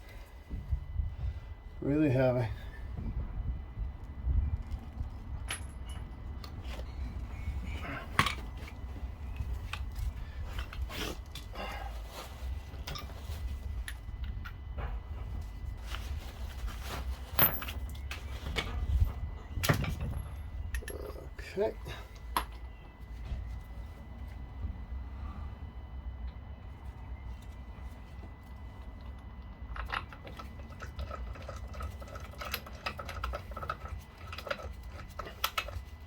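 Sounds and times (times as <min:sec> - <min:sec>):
steady low rumble: 0:00.0 - 0:32.2
metallic clinks and knocks: 0:05.3 - 0:06.6, 0:17.3 - 0:21.2.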